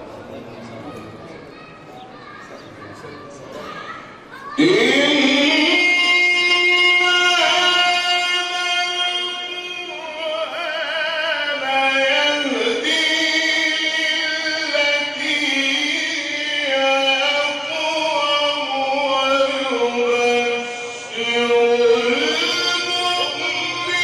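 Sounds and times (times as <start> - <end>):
man chanting through microphone: 4.6 - 24.0.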